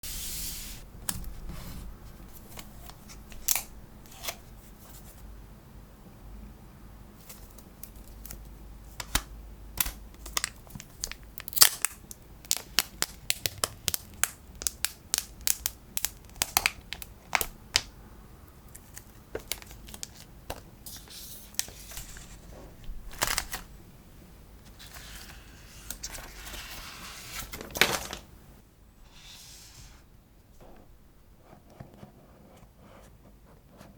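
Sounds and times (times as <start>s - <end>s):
plastic wrap tearing and crinkling: 9.8s - 17.9s.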